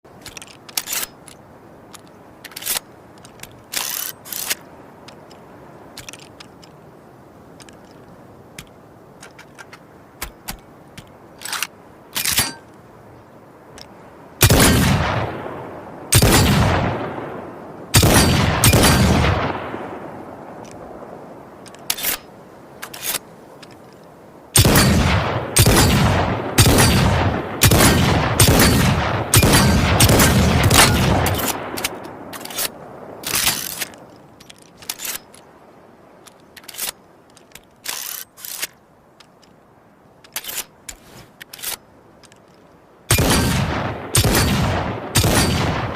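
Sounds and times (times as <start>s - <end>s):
gunshots with echo: 24.6s - 31.8s, 43.1s - 45.9s.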